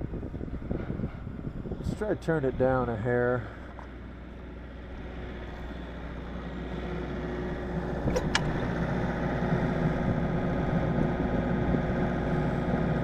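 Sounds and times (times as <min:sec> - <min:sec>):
generator engine running: 0:00.0 - 0:13.0.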